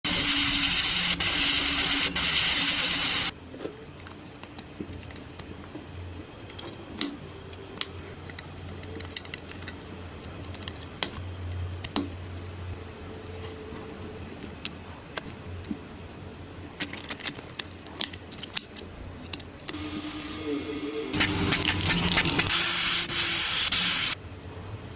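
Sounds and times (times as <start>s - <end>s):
loud steady air hiss: 0.1s - 3.3s, 22.3s - 24.2s.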